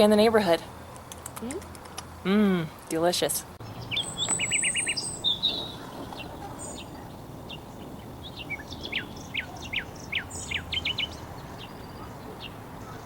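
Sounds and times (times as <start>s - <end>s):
faint outdoor background hiss: 0.0s - 13.0s
small birds chirping: 3.6s - 13.0s.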